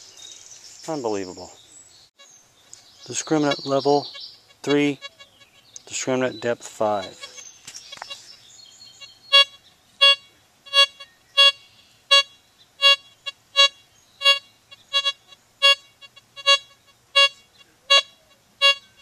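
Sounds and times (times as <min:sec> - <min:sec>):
metal detector beeping: 0:09.3 - 0:19.0.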